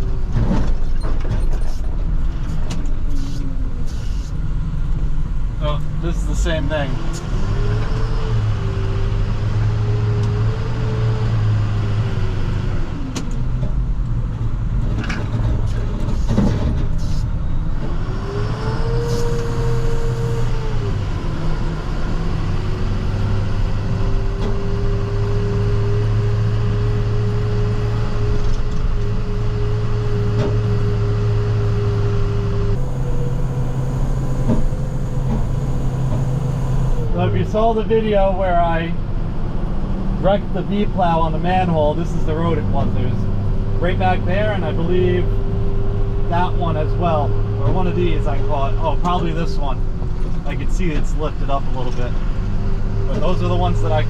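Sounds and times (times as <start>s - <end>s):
truck engine running: 19.3s - 54.0s.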